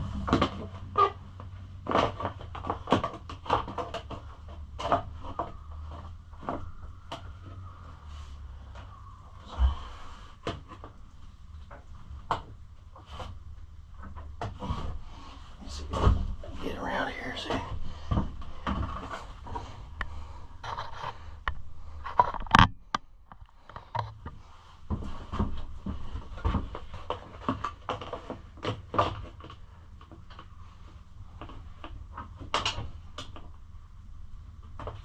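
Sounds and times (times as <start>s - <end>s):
plastic parts scraping and clicking: 1.8s - 7.6s, 18.1s - 22.7s.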